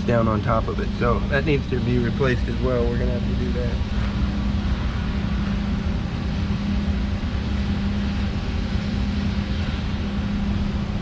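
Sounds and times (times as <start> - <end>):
low machine drone: 0.0 - 11.0.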